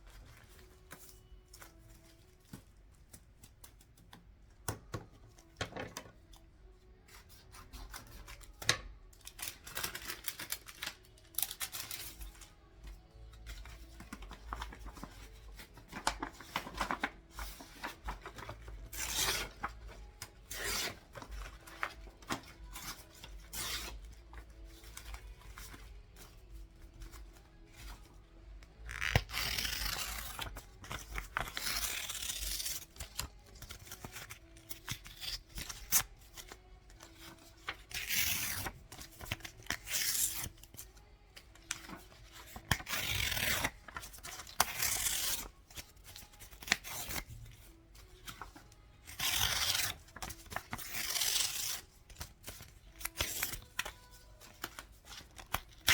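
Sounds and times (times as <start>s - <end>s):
paper rustling and sliding: 15.8s - 18.6s.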